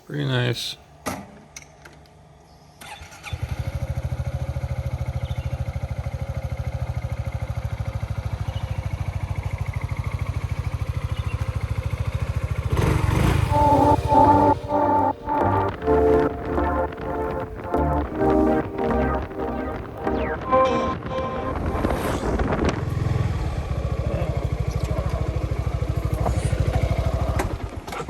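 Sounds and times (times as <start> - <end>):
motorcycle engine starting: 2.8 - 15.8, 22.3 - 28.0
motorcycle engine idling: 3.5 - 13.6, 23.3 - 27.9.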